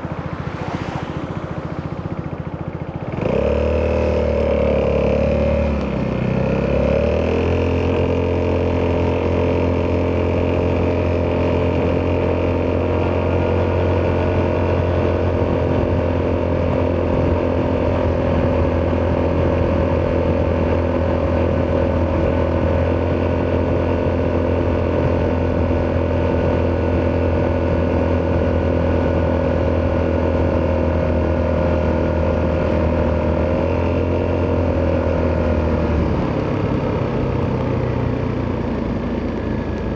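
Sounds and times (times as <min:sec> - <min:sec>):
scooter engine running: 0:00.0 - 0:39.9.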